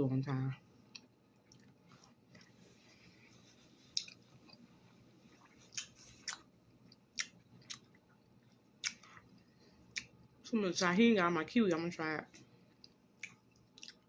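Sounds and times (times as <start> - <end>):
person chewing fruit: 0.8 - 10.3, 12.7 - 14.0.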